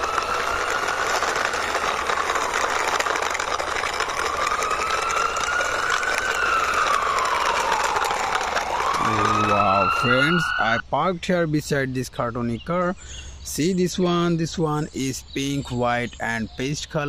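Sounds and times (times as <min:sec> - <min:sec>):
toy ambulance whirring siren: 0:00.0 - 0:10.8
toy wheels rattling: 0:00.0 - 0:10.8.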